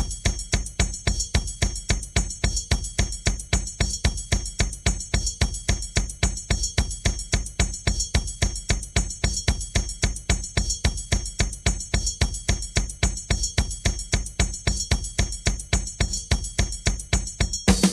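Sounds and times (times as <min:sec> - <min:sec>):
drum loop beat: 0:17.5 - 0:17.9
bass drum thumps: 0:17.7 - 0:17.9.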